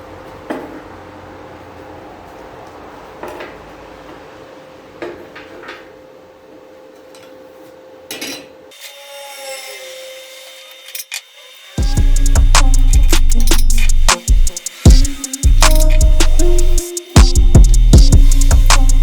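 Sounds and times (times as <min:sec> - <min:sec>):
background music: 0:11.8 - 0:19.0
steady hum: 0:11.8 - 0:19.0.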